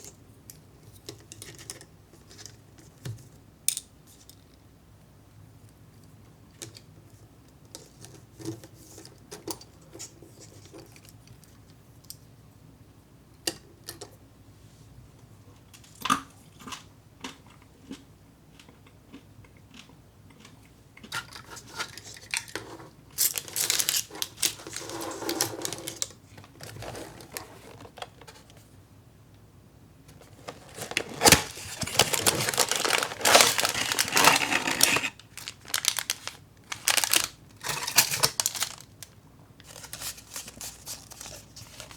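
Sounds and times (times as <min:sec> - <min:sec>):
plastic packaging crinkling: 0:21.7 - 0:28.5, 0:30.1 - 0:41.9.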